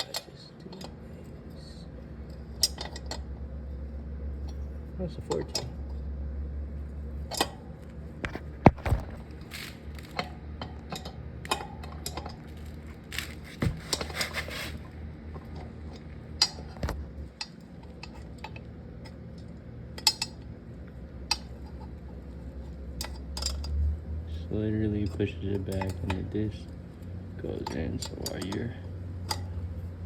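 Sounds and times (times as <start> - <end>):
steady low hum: 0.0 - 30.0
wrench clinking on metal parts: 2.5 - 3.3, 25.0 - 26.6, 27.5 - 29.6.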